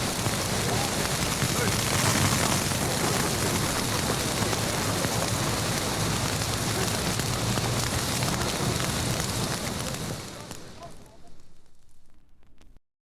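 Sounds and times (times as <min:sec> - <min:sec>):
heavy rain hiss: 0:00.0 - 0:12.7.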